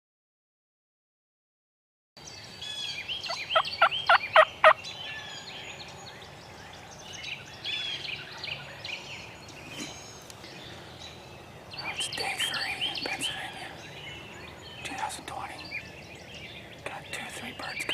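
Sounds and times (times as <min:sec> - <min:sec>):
songbirds chirping and singing: 0:02.2 - 0:17.9
turkey gobbling: 0:03.3 - 0:04.8.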